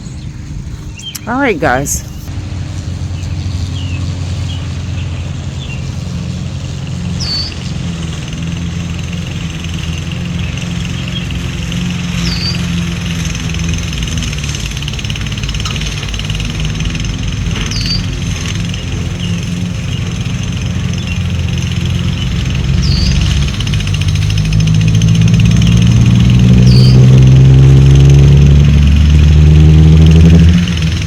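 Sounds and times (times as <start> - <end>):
bird chirping: 0.0 - 2.3
lawnmower engine running: 2.3 - 26.6, 27.4 - 31.0.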